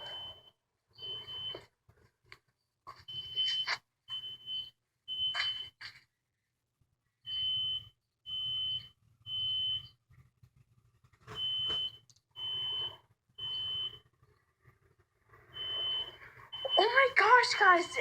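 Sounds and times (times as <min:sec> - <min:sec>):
fire alarm high beeps: 0:00.0 - 0:01.7, 0:03.0 - 0:05.8, 0:07.3 - 0:10.0, 0:11.3 - 0:14.1, 0:15.5 - 0:18.0.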